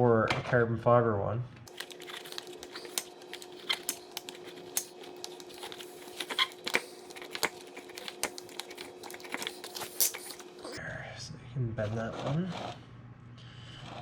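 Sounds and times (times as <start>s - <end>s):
plastic clicks and scrapes: 1.7s - 10.8s.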